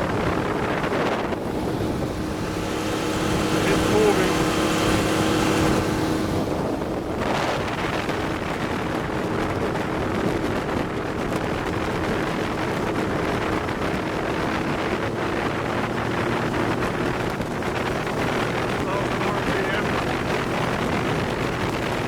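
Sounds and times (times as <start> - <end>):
outboard engine running: 0.0 - 22.0
water rushing against hull: 0.0 - 22.0
wind buffeting microphone: 0.0 - 22.0.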